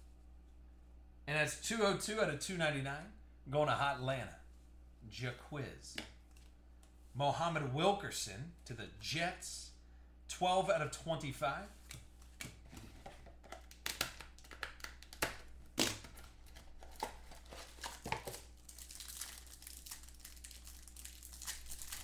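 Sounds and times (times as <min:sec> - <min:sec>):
cards rustling and tapping: 0:11.8 - 0:19.4
wrappers crinkling and tearing: 0:13.4 - 0:22.0.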